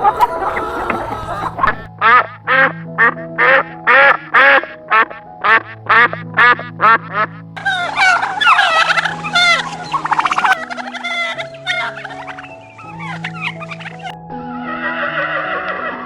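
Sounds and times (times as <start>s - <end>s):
duck quacking: 0.0s - 14.2s
background music: 0.0s - 16.0s.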